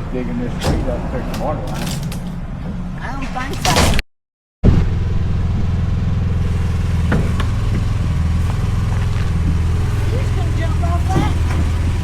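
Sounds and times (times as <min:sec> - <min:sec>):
excavator engine running: 0:04.6 - 0:12.0.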